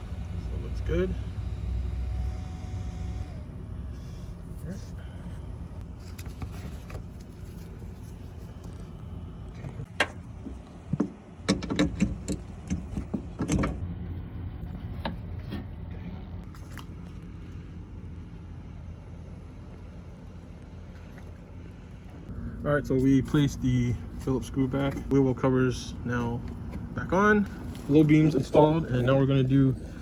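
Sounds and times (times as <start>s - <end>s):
low rumble: 22.2s - 28.0s.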